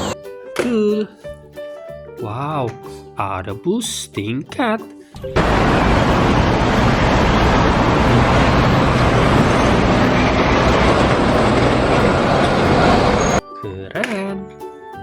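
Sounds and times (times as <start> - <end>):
vehicle engine noise with hum: 5.4 - 13.4.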